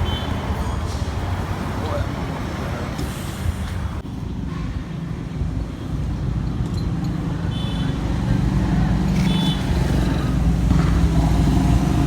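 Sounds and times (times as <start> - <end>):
car engine and tyres rumbling: 0.0 - 12.0.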